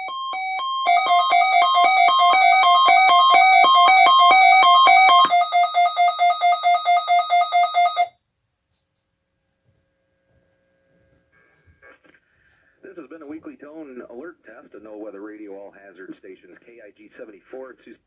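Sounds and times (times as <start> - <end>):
buzzy electronic alarm beeps: 0.0 - 8.2.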